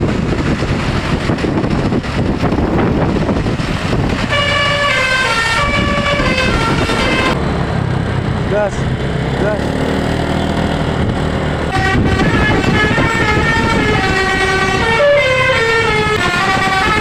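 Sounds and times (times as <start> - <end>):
loud steady rushing noise: 0.0 - 17.0
bus horn playing a melody: 4.3 - 7.4, 11.7 - 17.0.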